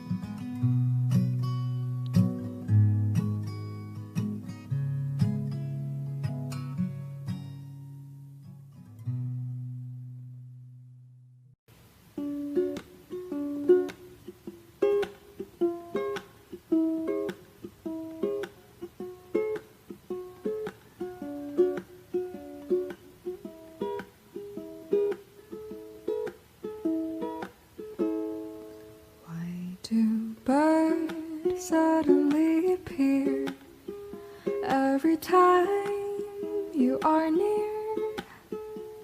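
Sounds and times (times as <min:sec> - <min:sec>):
plucked string melody: 0:00.0 - 0:11.4, 0:12.0 - 0:29.2, 0:30.0 - 0:39.0
person singing: 0:29.2 - 0:38.6.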